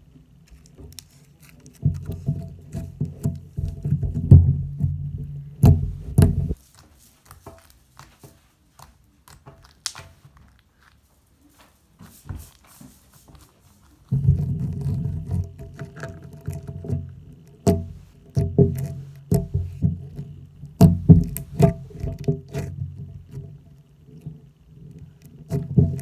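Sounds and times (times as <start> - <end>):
slime sticky pops and clicks: 8.8 - 10.2.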